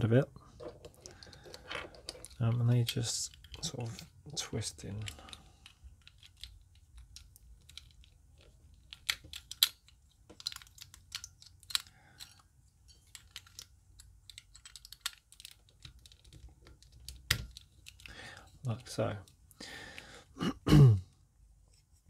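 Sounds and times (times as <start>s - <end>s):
plastic puzzle cube clicking: 5.0s - 12.4s, 13.1s - 18.2s.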